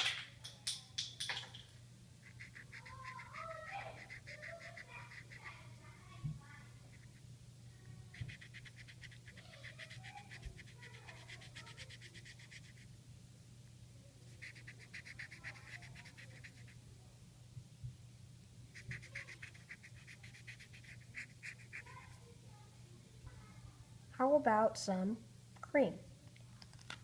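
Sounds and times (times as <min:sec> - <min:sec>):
marker scratching on paper: 0:02.2 - 0:05.6, 0:06.8 - 0:07.2, 0:08.0 - 0:12.9, 0:14.3 - 0:16.8, 0:18.7 - 0:22.1.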